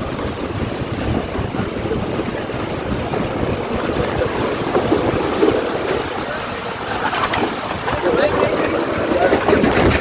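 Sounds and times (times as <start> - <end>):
wind rushing: 0.0 - 6.6
heavy rain pouring: 0.0 - 10.0.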